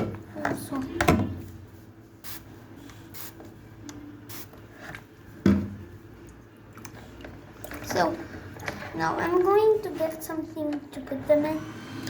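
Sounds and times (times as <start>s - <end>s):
perfume spray hissing: 2.2s - 3.4s, 4.3s - 4.6s.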